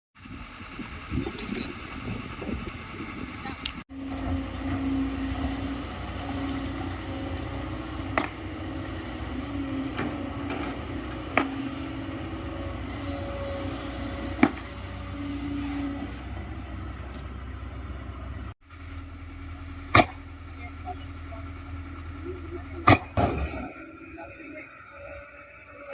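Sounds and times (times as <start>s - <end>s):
diesel engine drone: 0.2s - 25.9s
metal clanks: 8.1s - 9.0s, 9.9s - 12.4s, 19.9s - 20.7s, 22.8s - 23.7s.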